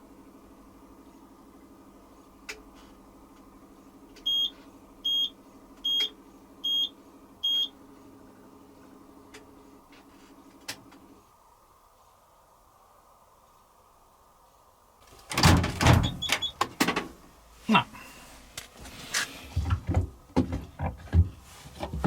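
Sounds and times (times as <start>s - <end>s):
low machine hum: 0.0s - 16.6s
washing machine beeping: 4.2s - 7.8s, 15.8s - 16.6s.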